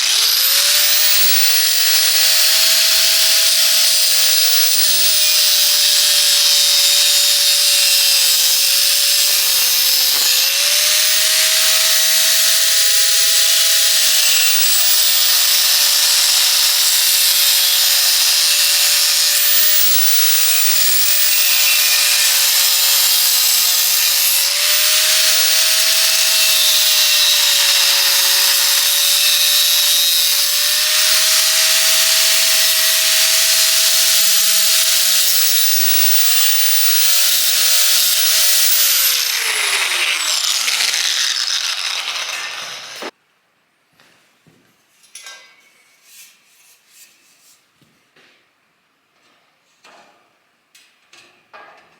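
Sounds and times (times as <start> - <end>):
power tool cutting steel: 0.0 - 43.2.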